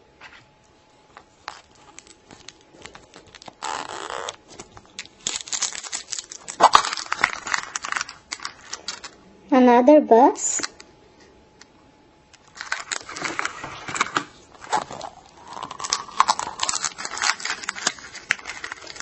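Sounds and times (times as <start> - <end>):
plastic crinkling: 1.0 - 9.2, 12.4 - 19.0
plastic seal tearing: 1.5 - 9.2, 12.4 - 19.0.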